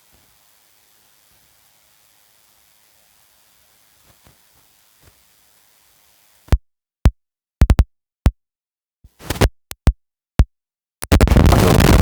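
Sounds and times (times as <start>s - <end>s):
drum machine kick drum hits: 7.6s - 7.9s.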